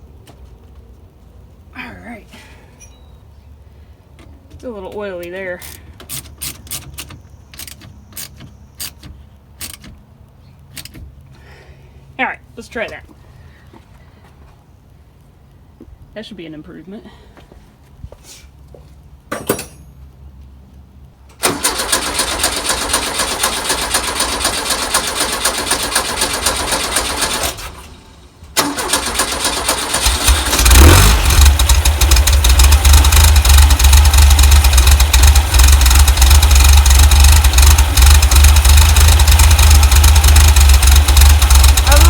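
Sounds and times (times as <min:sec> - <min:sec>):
engine running with low rumble: 0:00.0 - 0:42.0
starter motor cranking: 0:21.4 - 0:27.9, 0:28.6 - 0:42.0.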